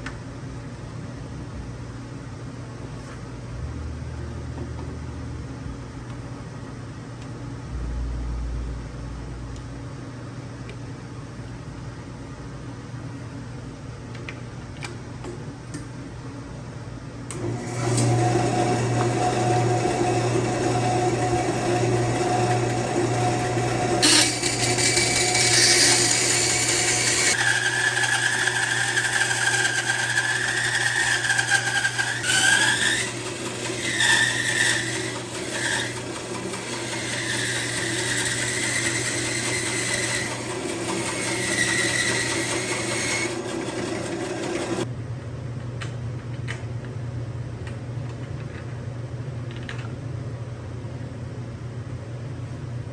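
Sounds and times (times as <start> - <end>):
electric saw motor hum: 17.3 - 44.8
saw cutting wood with whine: 17.3 - 44.8.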